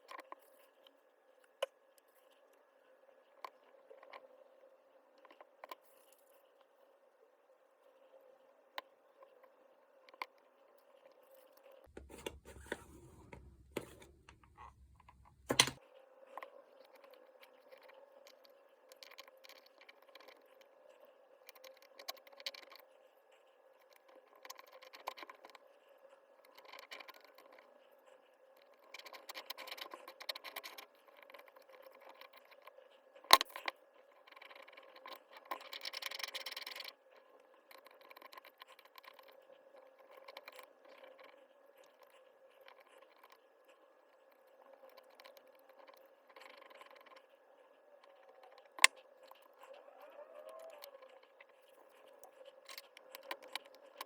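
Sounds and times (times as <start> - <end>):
dense scraping: 11.9 - 15.6
tools clicking and tapping: 11.9 - 15.8.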